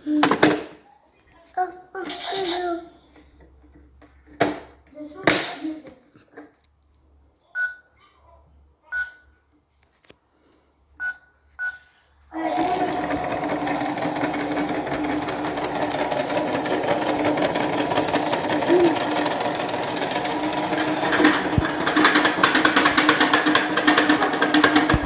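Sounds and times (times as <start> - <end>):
toy button beeps: 8.9 - 9.3
small motor whirring: 12.4 - 21.8.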